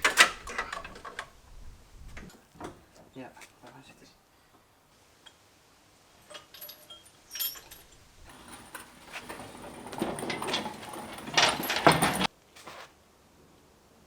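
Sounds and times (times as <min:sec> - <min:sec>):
metal clinks and knocks: 0:06.2 - 0:12.3
metal rattling and scraping: 0:06.4 - 0:12.3.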